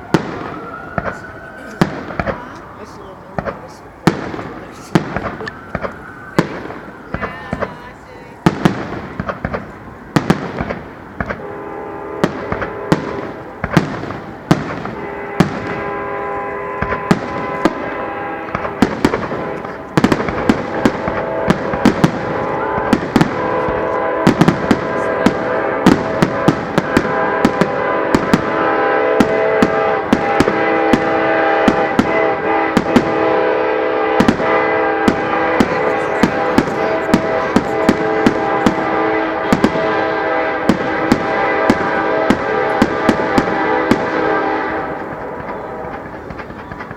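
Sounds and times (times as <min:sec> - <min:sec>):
fireworks bursting: 0:00.0 - 0:46.9.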